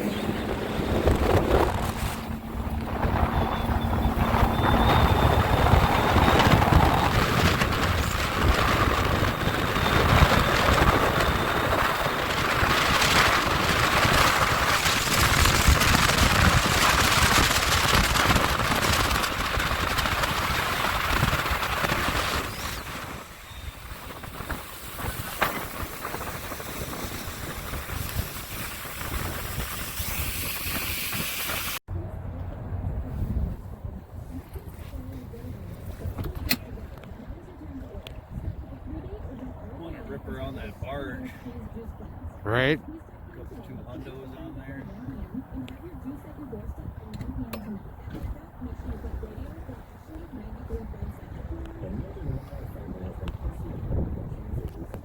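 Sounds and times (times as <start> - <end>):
boat running on water: 0.0 - 40.6
wind buffeting microphone: 0.0 - 55.0.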